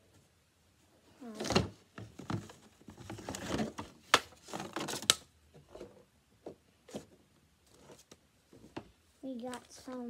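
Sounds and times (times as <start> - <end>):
plastic scraping and rustling: 1.2 - 6.0, 6.8 - 10.0.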